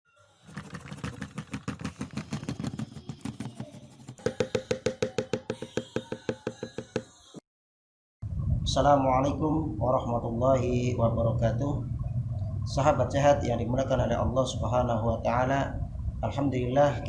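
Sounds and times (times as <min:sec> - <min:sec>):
knocking percussion beat: 0:00.6 - 0:07.1.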